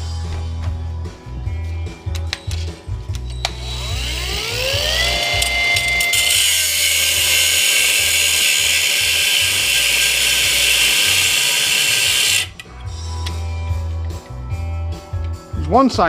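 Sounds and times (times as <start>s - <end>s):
rotary cutting tool whining: 3.3s - 12.6s.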